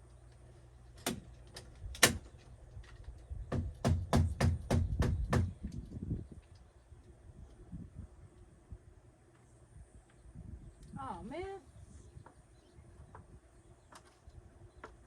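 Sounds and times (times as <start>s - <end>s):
hammer blows on wood: 3.5s - 5.6s.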